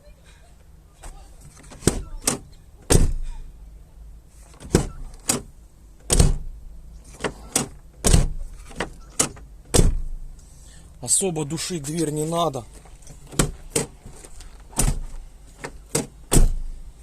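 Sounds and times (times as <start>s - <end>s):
car door slamming: 1.0s - 3.5s, 4.5s - 10.3s, 13.1s - 16.8s.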